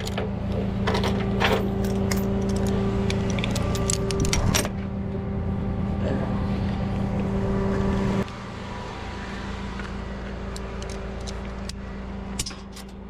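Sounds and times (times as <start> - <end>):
truck engine idling: 0.0 - 13.0
chains and hooks clinking: 0.9 - 4.8.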